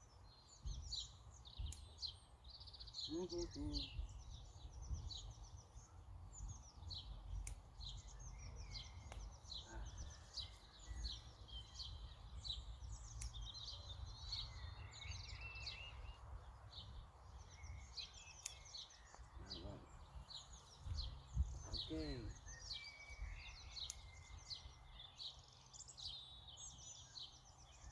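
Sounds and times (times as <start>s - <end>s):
songbirds chirping: 0.0s - 27.9s
sharp clicks: 7.3s - 7.9s, 13.0s - 13.7s, 18.3s - 19.3s, 23.8s - 24.2s.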